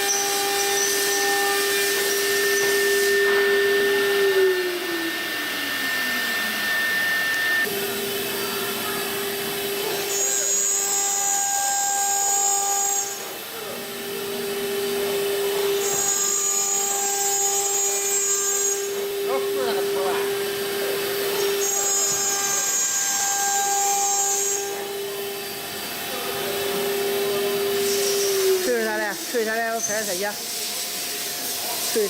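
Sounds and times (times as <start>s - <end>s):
router spindles whining: 0.0s - 32.0s
cutting hiss: 23.8s - 32.0s.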